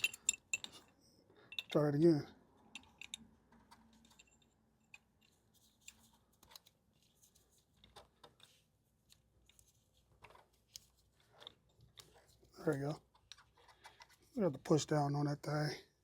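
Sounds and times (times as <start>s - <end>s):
small metal parts clicking: 0.0s - 0.9s, 1.5s - 1.8s, 2.7s - 6.1s.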